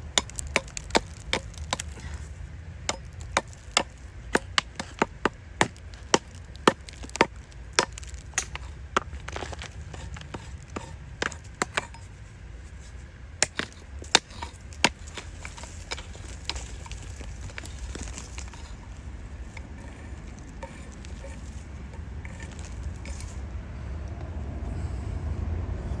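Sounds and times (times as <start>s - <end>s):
hand tool chipping sediment: 0.0s - 2.3s, 2.9s - 23.4s.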